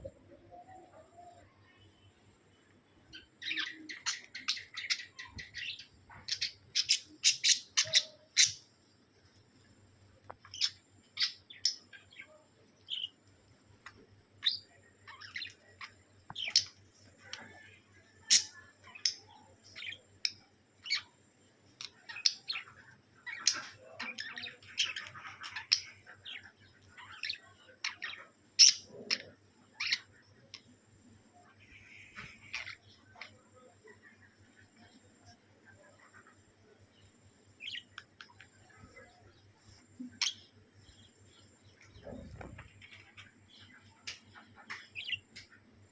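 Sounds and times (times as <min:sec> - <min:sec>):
faint low hum: 0:00.0 - 0:45.9
pet bird chirping and squawking: 0:03.4 - 0:08.6.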